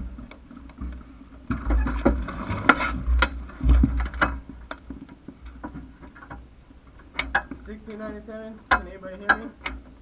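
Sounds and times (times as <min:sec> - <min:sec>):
clattering clicks and rattles: 0:00.2 - 0:06.4.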